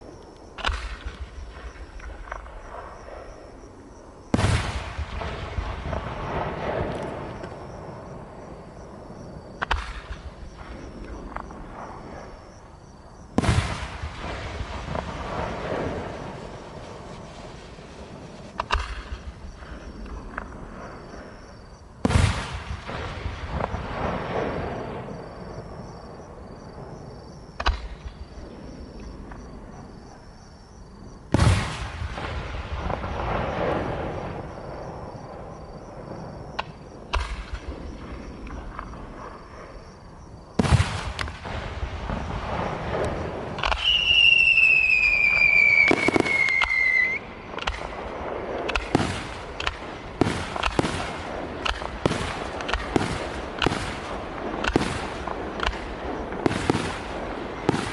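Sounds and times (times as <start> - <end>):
firework shells bursting with bangs: 0.0 - 26.8, 31.3 - 57.9
firework crackling: 13.3 - 25.1, 40.6 - 57.9
falling firework whistle: 42.7 - 48.0.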